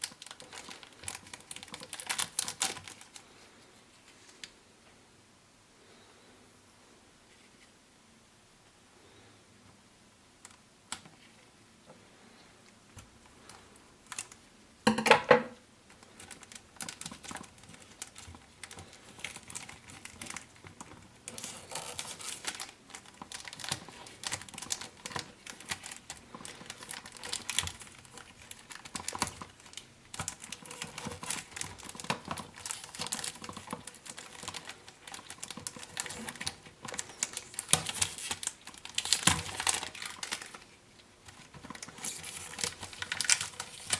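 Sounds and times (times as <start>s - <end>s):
packaging crinkling and clicking: 0.0s - 3.3s, 13.0s - 14.5s, 15.8s - 43.9s.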